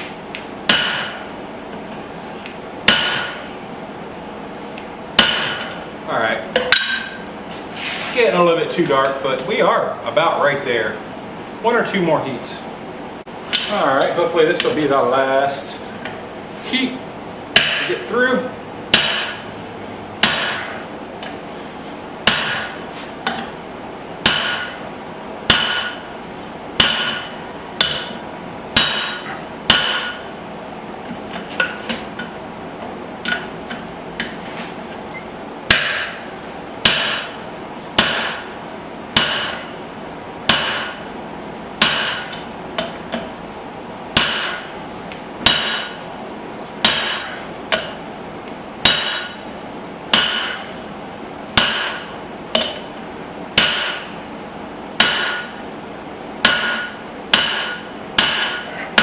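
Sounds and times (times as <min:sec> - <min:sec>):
hammer striking hot metal: 0:00.3 - 0:01.3, 0:02.9 - 0:03.5, 0:05.2 - 0:05.8, 0:06.6 - 0:07.2, 0:17.6 - 0:18.0, 0:18.9 - 0:19.5, 0:20.2 - 0:21.4, 0:22.2 - 0:23.6, 0:24.2 - 0:24.8, 0:25.5 - 0:26.1, 0:26.8 - 0:28.2, 0:28.8 - 0:30.3, 0:35.7 - 0:37.4, 0:38.0 - 0:38.6, 0:39.2 - 0:39.8, 0:40.5 - 0:41.1, 0:41.8 - 0:43.3, 0:44.2 - 0:44.8, 0:45.4 - 0:46.1, 0:46.8 - 0:48.0, 0:48.8 - 0:49.4, 0:50.1 - 0:50.8, 0:51.5 - 0:52.9, 0:53.6 - 0:54.2, 0:55.0 - 0:55.6, 0:56.4 - 0:59.0.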